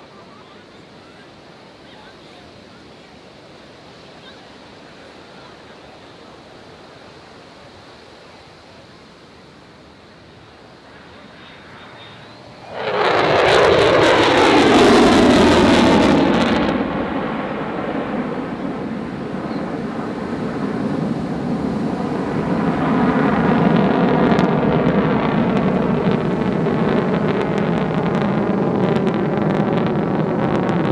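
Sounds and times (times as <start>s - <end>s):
jet aircraft flying past: 10.7s - 30.9s.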